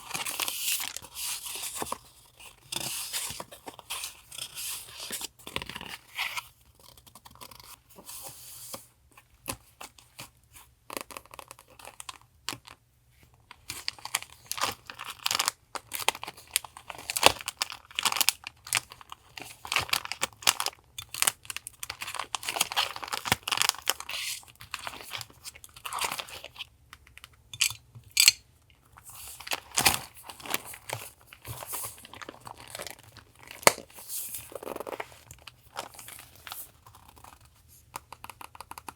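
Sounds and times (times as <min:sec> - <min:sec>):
paper rustling and crinkling: 0:29.0 - 0:38.4.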